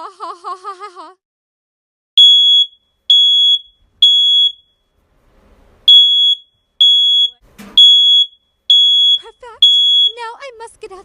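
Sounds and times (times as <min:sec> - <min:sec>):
fire alarm beeping: 0:02.2 - 0:04.8, 0:05.9 - 0:10.2.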